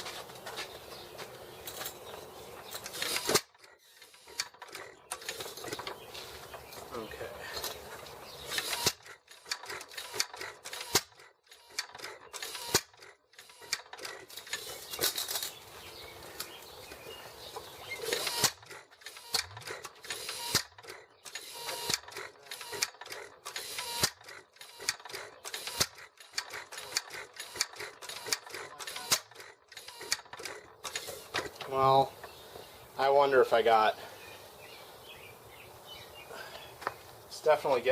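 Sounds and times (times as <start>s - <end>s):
metallic clicks and clatter: 1.6s - 6.8s, 7.6s - 15.6s, 18.1s - 31.7s.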